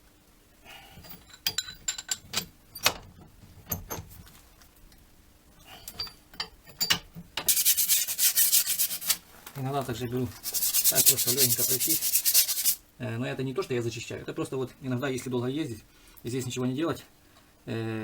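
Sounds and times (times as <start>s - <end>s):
sandpaper scratching metal: 7.5s - 9.2s, 10.4s - 12.8s.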